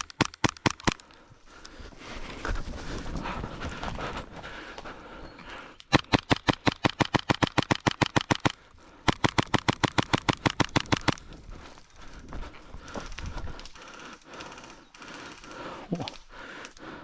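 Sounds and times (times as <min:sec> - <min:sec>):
airsoft gun automatic fire: 0:05.9 - 0:11.2.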